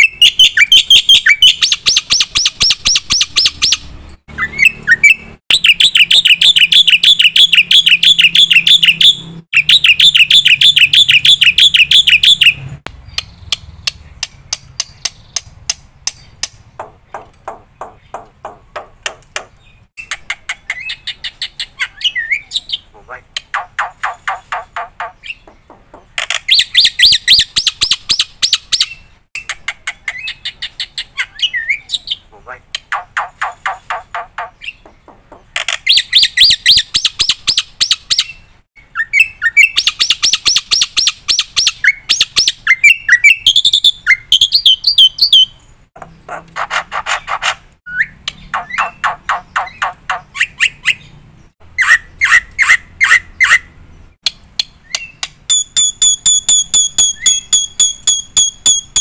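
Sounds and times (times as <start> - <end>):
rising whistled bird notes: 0.0 - 12.6, 54.8 - 59.0
bird chattering song: 0.0 - 59.0.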